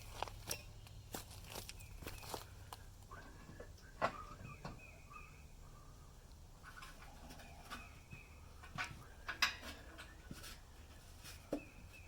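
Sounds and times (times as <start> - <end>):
parts clicking and knocking: 8.6 - 10.6.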